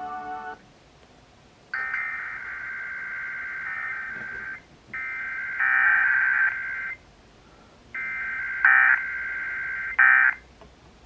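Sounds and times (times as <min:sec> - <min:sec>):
digital warbling data bursts: 0:01.8 - 0:07.0.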